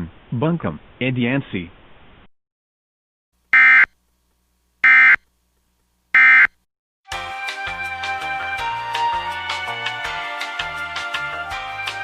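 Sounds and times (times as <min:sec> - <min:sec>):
music: 0:07.1 - 0:12.0.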